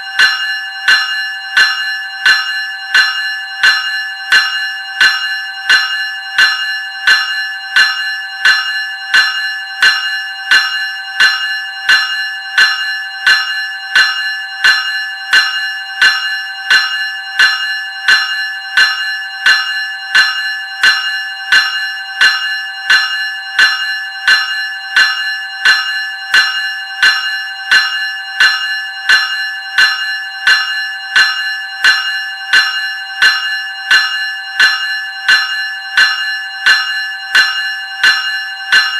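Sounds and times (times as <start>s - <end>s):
electric bell ringing: 0.0s - 38.9s.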